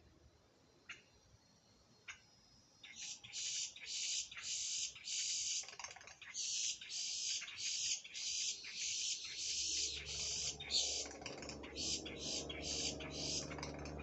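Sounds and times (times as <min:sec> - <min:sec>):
grackles calling: 0:02.8 - 0:14.0.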